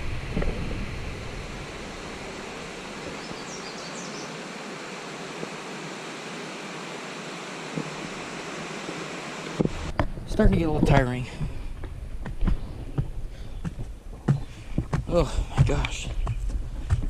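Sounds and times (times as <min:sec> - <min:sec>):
waterfall rushing: 0:00.0 - 0:09.9.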